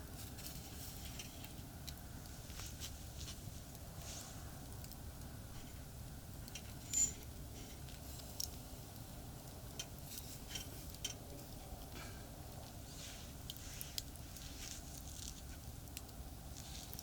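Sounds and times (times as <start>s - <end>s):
campfire clicks and ticks: 0.0s - 17.0s
low rumble of traffic: 0.0s - 17.0s
sharp clink: 6.8s - 7.3s.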